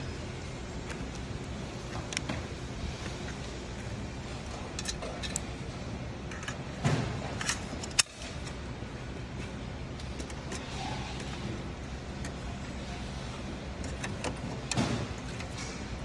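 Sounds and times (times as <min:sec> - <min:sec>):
steady low hum: 0:00.0 - 0:16.0
computer parts clicking and knocking: 0:13.8 - 0:15.7.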